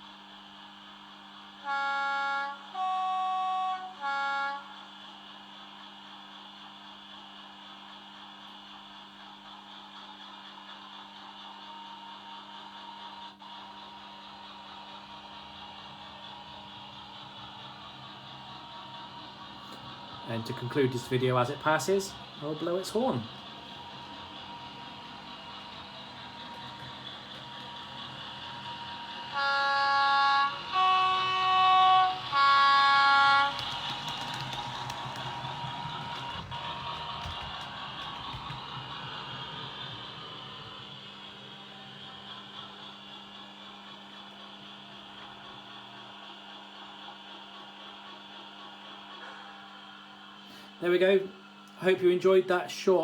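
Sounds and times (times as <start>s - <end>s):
model train two-tone horn: 1.6s - 5.0s, 29.3s - 35.1s.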